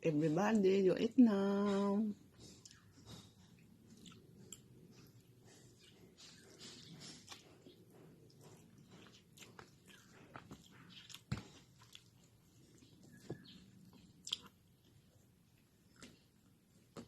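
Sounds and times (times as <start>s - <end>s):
faint chewing: 2.1s - 17.0s
wet mouth clicks and smacks: 14.2s - 14.6s.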